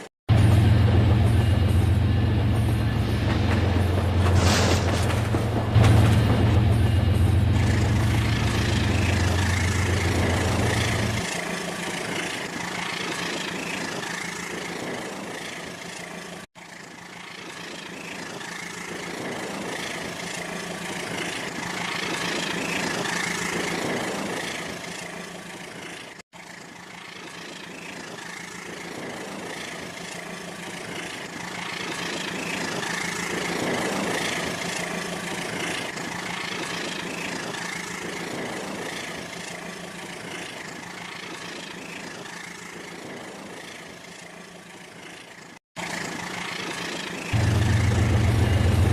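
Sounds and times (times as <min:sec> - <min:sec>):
low hum: 0:00.3 - 0:16.3, 0:46.5 - 0:48.9.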